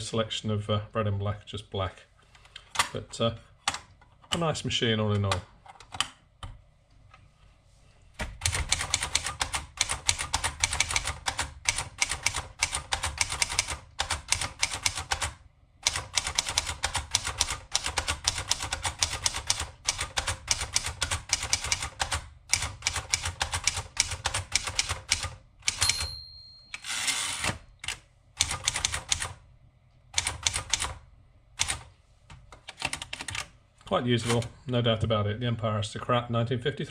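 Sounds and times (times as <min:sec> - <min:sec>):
typewriter keystroke clacks: 0:08.4 - 0:26.0, 0:27.8 - 0:29.4, 0:30.2 - 0:31.0, 0:31.6 - 0:31.9, 0:32.6 - 0:33.5
typewriter bell ring: 0:25.7 - 0:27.5
typewriter carriage rasping sweep: 0:26.8 - 0:27.6.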